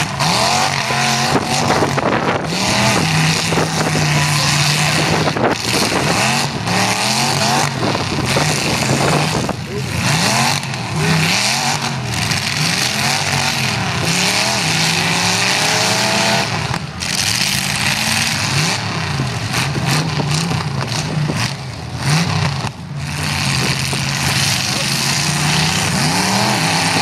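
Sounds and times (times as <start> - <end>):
car engines revving: 0.0 - 27.0.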